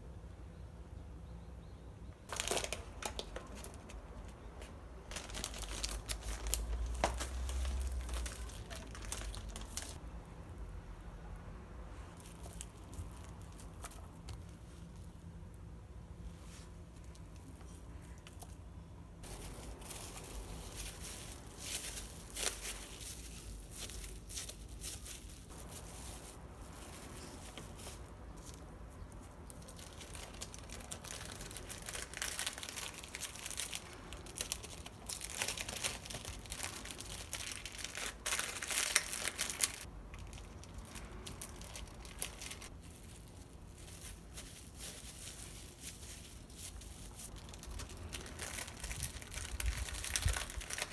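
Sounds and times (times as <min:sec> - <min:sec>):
wrapping material crinkling: 0:02.3 - 0:10.0, 0:12.0 - 0:15.3, 0:19.2 - 0:50.9.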